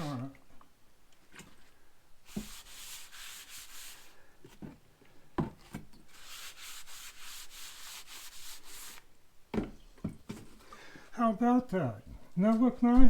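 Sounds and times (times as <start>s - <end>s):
paper towel rubbing wood: 2.3s - 4.7s, 6.1s - 9.1s.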